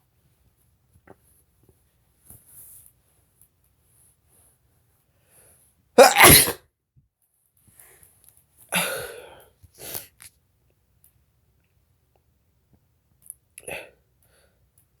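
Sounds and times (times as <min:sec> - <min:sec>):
person sneezing: 0:06.0 - 0:06.6.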